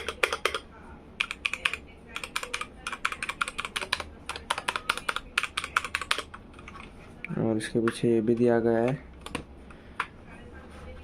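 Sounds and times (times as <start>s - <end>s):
mechanical keyboard typing: 0.0s - 0.6s, 1.2s - 6.8s, 7.9s - 9.4s.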